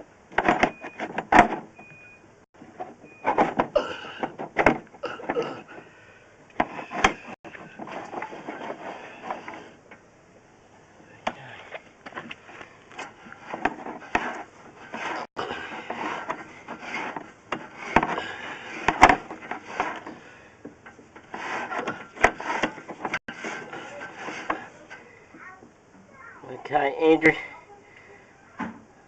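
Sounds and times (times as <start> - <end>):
scraping and rubbing in pipe: 6.5 - 9.8, 11.4 - 25.1.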